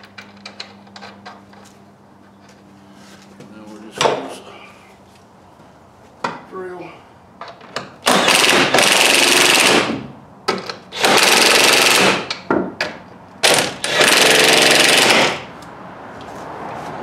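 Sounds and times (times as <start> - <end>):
power drill tightening nuts: 13.4 - 15.4.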